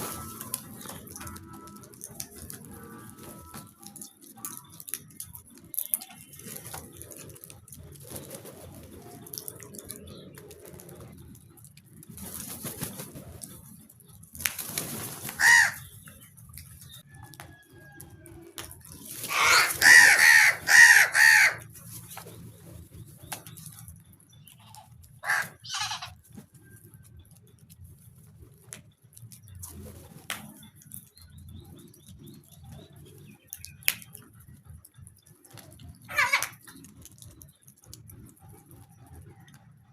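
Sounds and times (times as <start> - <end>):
crows cawing: 15.4 - 15.8, 19.3 - 21.6, 25.2 - 26.2, 36.1 - 36.6.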